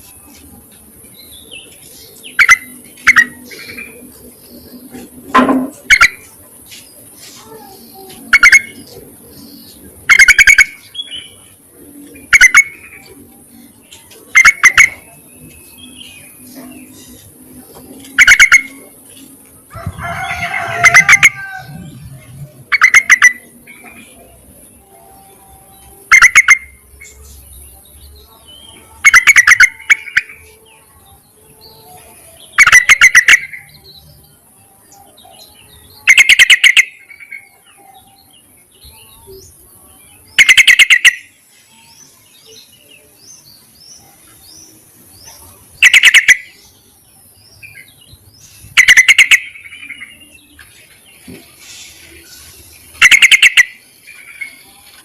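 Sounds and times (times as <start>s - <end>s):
bulbul bubbly calls: 2.2s - 3.9s, 5.8s - 6.2s, 8.3s - 9.0s, 10.0s - 10.8s, 12.2s - 13.0s, 14.3s - 15.1s, 18.2s - 18.8s, 20.8s - 21.4s, 22.6s - 23.7s, 26.1s - 26.8s, 29.0s - 30.4s, 32.6s - 33.7s, 36.1s - 37.0s, 40.4s - 41.3s, 45.8s - 46.6s, 48.7s - 50.1s, 53.0s - 54.5s.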